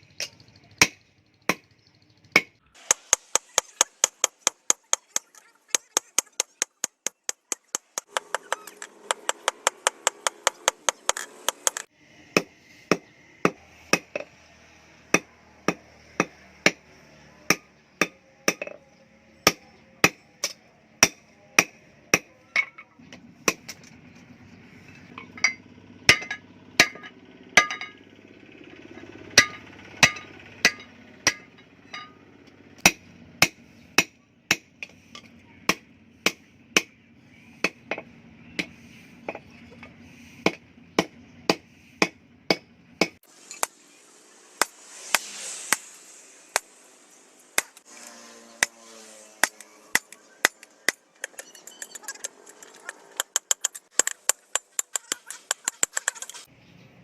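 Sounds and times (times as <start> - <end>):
hammer striking steel: 17.5 - 18.8, 19.4 - 22.9, 25.2 - 28.0, 29.3 - 32.2, 49.4 - 52.0.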